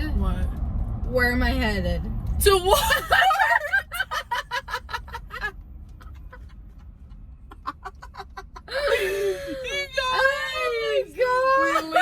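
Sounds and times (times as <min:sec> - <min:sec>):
woman laughing: 0:02.7 - 0:06.5, 0:07.5 - 0:09.9, 0:11.5 - 0:12.0.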